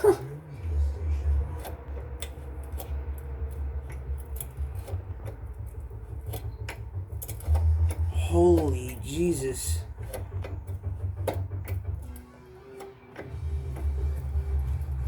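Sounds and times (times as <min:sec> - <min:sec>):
engine parts and tools clicking: 0:00.0 - 0:15.0.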